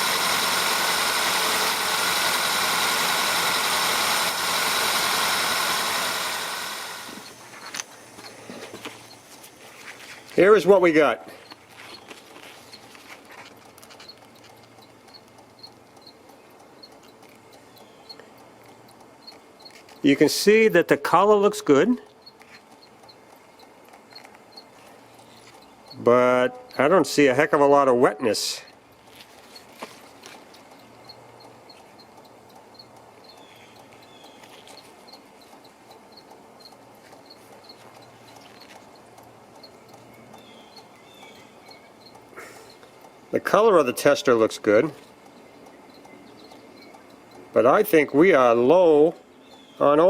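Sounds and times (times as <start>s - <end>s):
cricket chirping: 7.1s - 10.3s, 13.7s - 20.0s, 22.0s - 26.8s, 30.6s - 43.2s, 45.0s - 47.6s.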